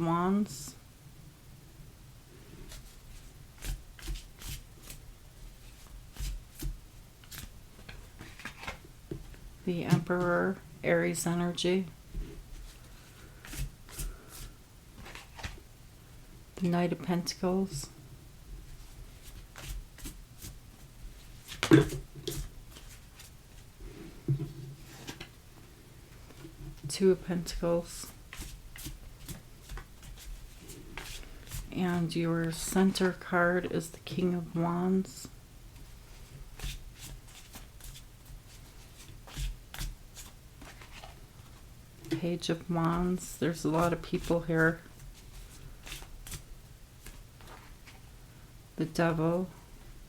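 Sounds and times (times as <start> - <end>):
cards rustling and tapping: 6.2 - 10.0.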